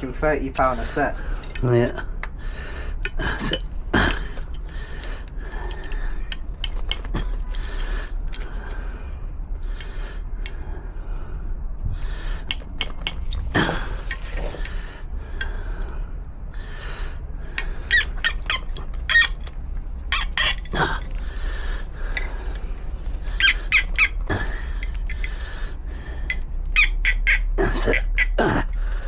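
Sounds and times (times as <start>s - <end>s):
squeak: 17.9s - 19.5s, 20.1s - 20.8s, 23.3s - 24.2s.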